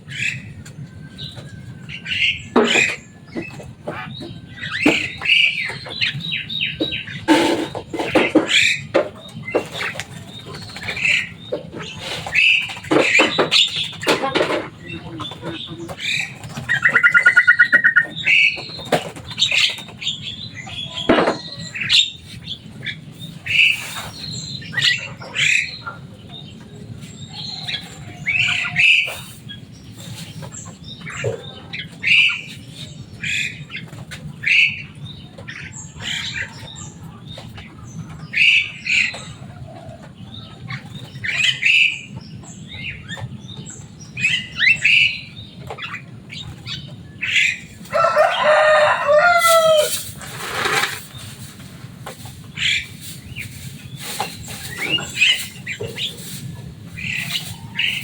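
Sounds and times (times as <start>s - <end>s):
bird harsh squawking calls: 13.6s - 18.6s
bird rapid trill: 16.6s - 18.6s.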